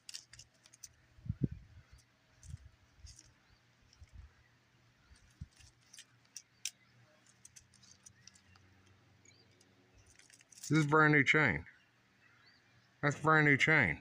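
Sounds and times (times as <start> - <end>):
metal chain clicking: 0.0 - 1.0, 1.9 - 4.2, 5.1 - 10.9.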